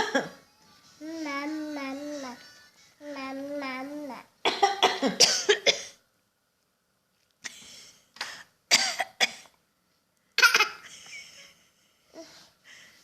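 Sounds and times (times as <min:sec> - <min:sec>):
person imitating coughs: 0:04.5 - 0:06.0.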